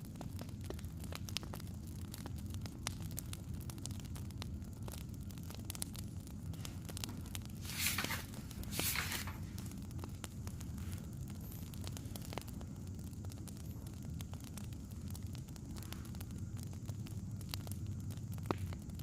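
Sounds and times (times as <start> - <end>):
wood fire crackling: 0.0 - 19.0
hissing bursts: 7.6 - 9.4.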